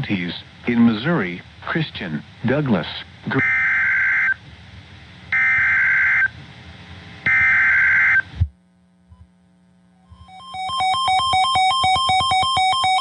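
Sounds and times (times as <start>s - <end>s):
faint low hum: 0.0s - 13.0s
harsh data bursts: 10.1s - 13.0s.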